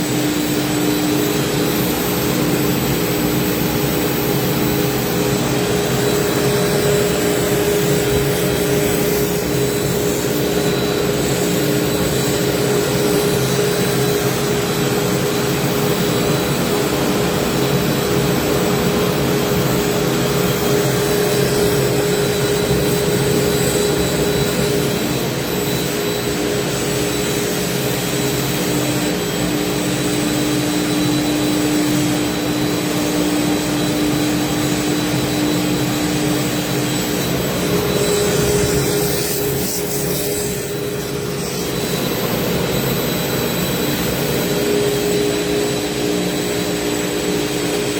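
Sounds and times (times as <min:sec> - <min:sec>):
cnc router running: 0:00.0 - 0:47.9.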